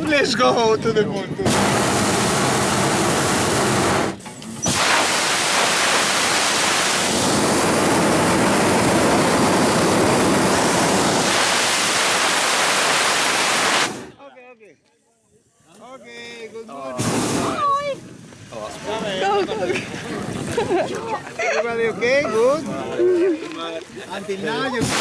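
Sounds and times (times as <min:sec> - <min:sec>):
propane burner firing: 0:01.4 - 0:14.2, 0:16.9 - 0:17.7, 0:24.8 - 0:25.0.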